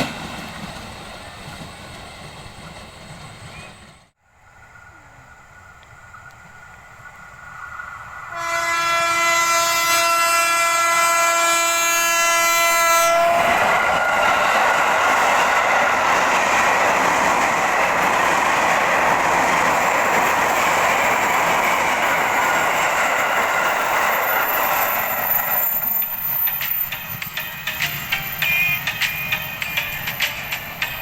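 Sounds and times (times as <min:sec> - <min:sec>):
train wheels rushing on rails: 0:00.0 - 0:31.0
electric train horn: 0:08.3 - 0:13.7.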